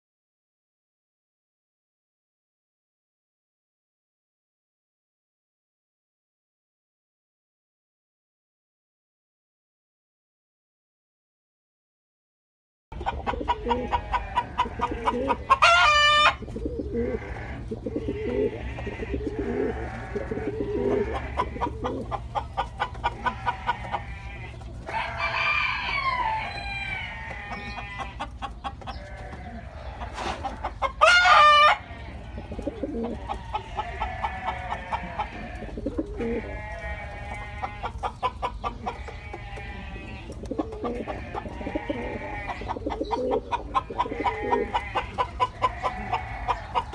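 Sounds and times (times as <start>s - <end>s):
pigeons cooing: 13.0s - 46.9s
loud high bird calls: 23.2s - 40.3s.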